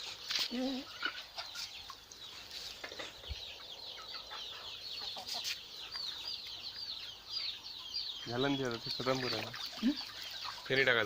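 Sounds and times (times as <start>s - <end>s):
chicks peeping: 0.4s - 11.0s.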